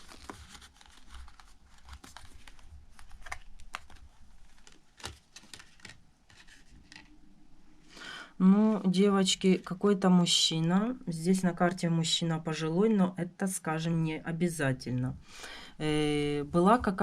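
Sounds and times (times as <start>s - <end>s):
cards rustling and sliding: 0.0s - 7.2s.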